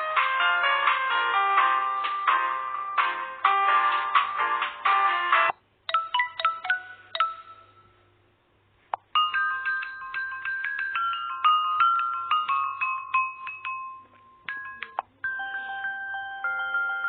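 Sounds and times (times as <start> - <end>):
busy ringtone tune: 0.0 - 8.1, 9.1 - 17.0
bell-like chime melody: 9.2 - 17.0
glockenspiel-like chime phrase: 9.2 - 17.0.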